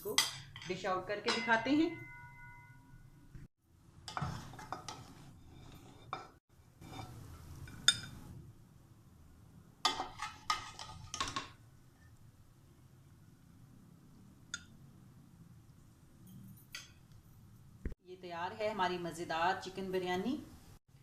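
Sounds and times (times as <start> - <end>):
spoon scraping and clinking on pots: 0.0 - 2.7, 4.1 - 8.3, 9.9 - 11.6.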